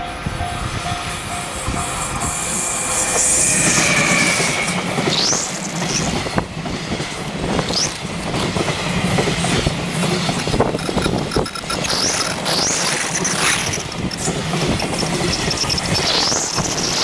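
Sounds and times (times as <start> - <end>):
high wheel squeals: 0.0 - 6.4, 7.4 - 8.2, 9.0 - 17.0
train wheels rumbling on rail: 0.0 - 17.0.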